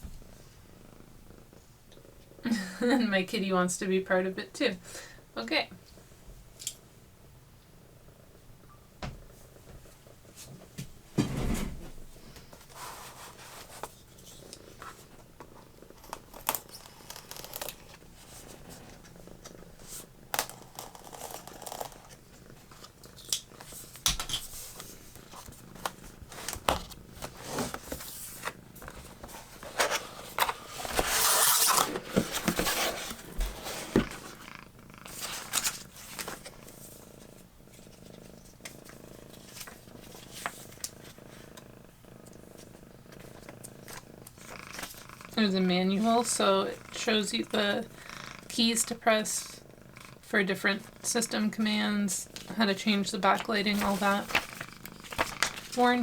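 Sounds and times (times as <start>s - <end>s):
cat purring: 0.0s - 56.0s
box and packaging rustling: 23.6s - 36.8s, 52.4s - 56.0s
packaging crinkling: 53.4s - 56.0s.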